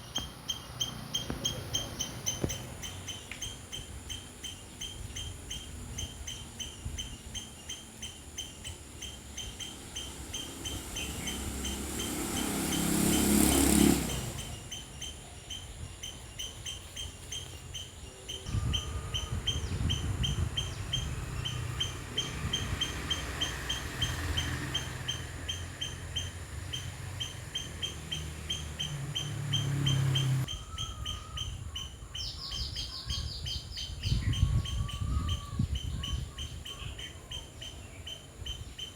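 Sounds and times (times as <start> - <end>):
bird trilling: 0.0 - 38.9
insects chirping: 0.0 - 38.9
vehicle passing: 9.0 - 15.1, 19.6 - 30.5.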